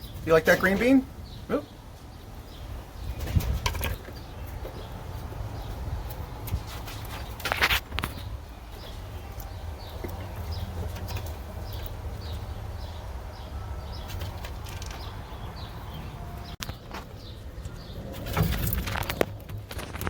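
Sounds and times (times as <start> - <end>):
close rustling: 3.0 - 12.9
sharp clicks and scratches: 5.6 - 12.5, 16.5 - 20.0.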